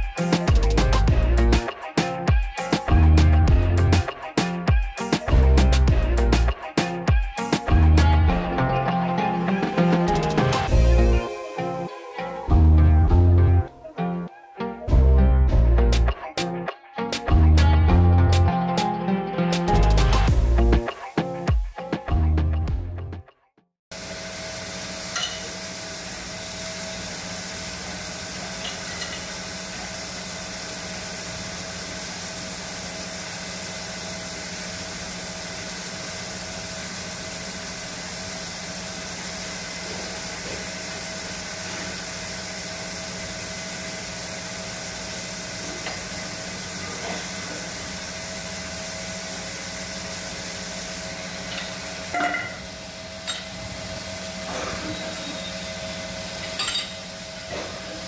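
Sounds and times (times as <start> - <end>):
metalworking machine humming: 23.9 - 58.0.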